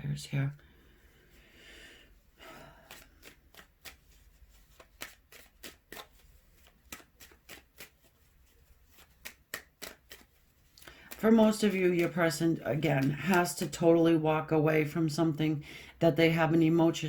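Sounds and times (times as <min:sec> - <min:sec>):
cards sliding: 0:02.7 - 0:13.7
cards snapping while shuffled: 0:02.8 - 0:13.8.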